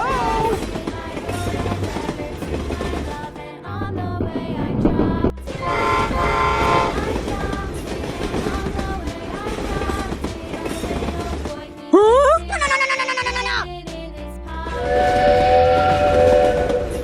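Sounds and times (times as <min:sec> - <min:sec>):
train rumbling clatter: 0:00.0 - 0:11.9, 0:13.9 - 0:17.0
train horn: 0:05.6 - 0:07.1, 0:14.8 - 0:17.0.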